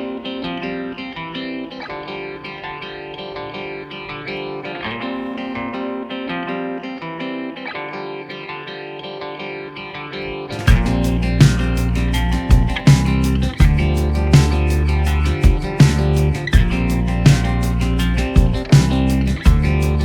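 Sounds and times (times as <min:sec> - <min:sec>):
guitar picking quick plucked notes: 0:00.0 - 0:20.0.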